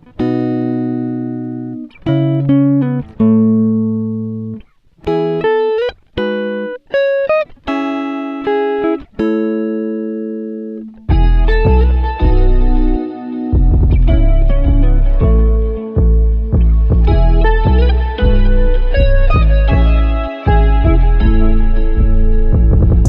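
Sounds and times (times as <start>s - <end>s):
plucked guitar music: 0.0s - 23.0s
deep bass note: 11.1s - 13.0s, 13.6s - 23.0s.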